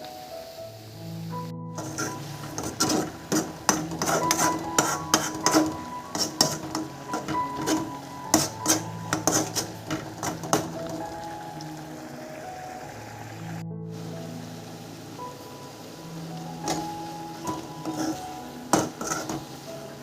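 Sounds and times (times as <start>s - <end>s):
background music: 0.0s - 20.0s
kitchen utensil knocking: 1.8s - 10.7s.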